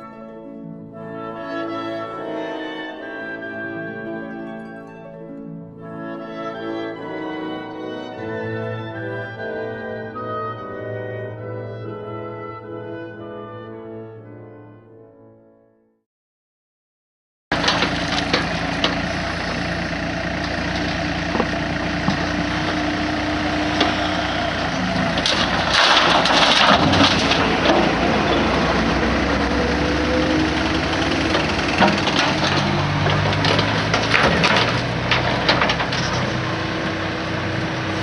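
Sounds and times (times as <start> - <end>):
crunching and scraping: 17.5 - 29.6, 30.2 - 38.0
machine engine running: 17.5 - 38.0.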